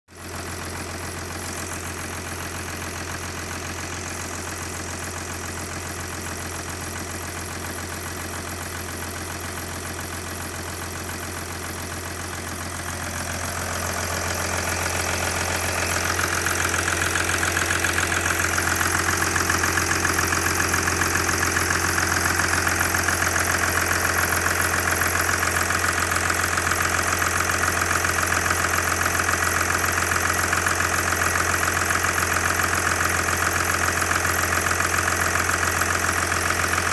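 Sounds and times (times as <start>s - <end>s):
diesel engine idling with knocking: 0.1s - 36.9s.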